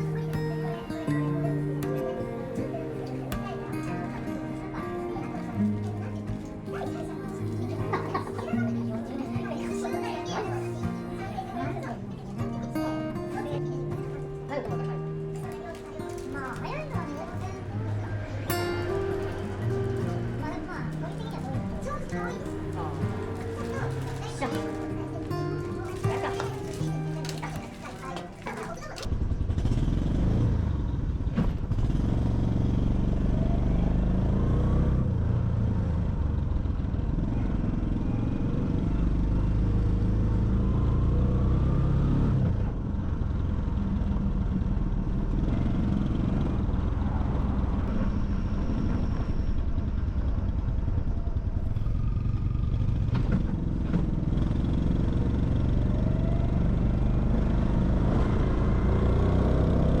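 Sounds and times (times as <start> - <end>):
motorcycle engine revving: 29.0 - 60.0.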